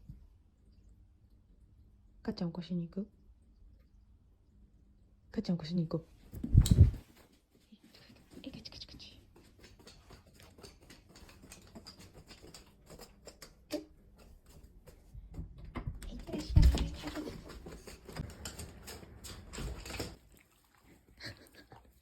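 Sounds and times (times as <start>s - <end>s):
dog claws clicking on floor: 8.2s - 20.2s.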